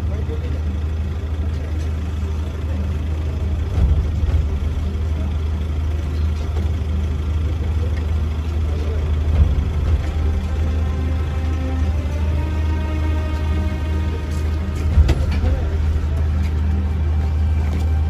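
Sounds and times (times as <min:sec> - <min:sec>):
low rumbling drone: 0:00.0 - 0:18.0.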